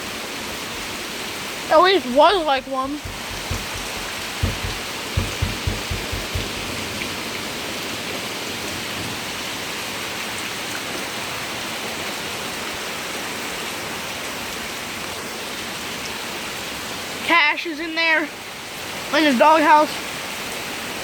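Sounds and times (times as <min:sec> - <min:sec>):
heavy rain falling: 0:00.8 - 0:07.6.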